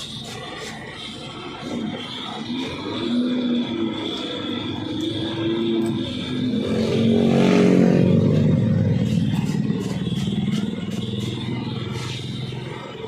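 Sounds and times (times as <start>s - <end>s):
motor vehicle passing: 2.7s - 13.0s.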